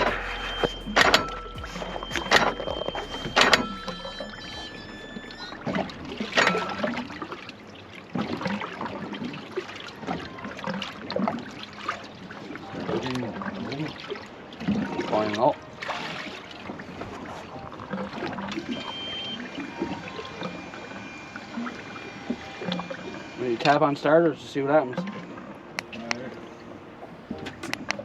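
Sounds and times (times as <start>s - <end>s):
water splashing against boat: 0.0s - 28.0s.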